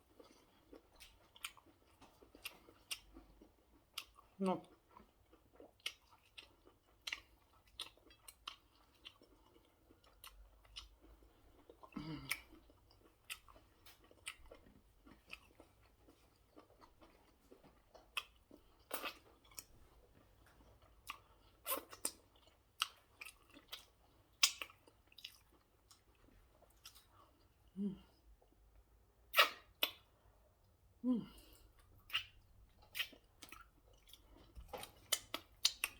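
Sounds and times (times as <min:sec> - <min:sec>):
close-miked chewing: 0:00.0 - 0:30.8, 0:31.5 - 0:35.9
wet mouth smacks and clicks: 0:29.3 - 0:30.1, 0:32.1 - 0:32.4.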